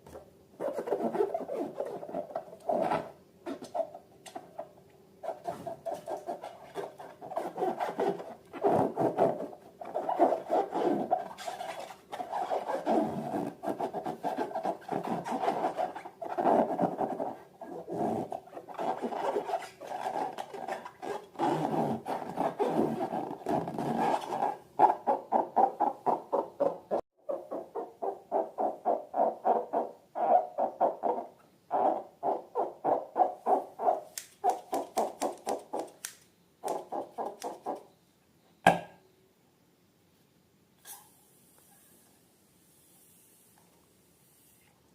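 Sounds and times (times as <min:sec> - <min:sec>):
balloons rubbing: 0:00.6 - 0:03.9, 0:04.6 - 0:26.5.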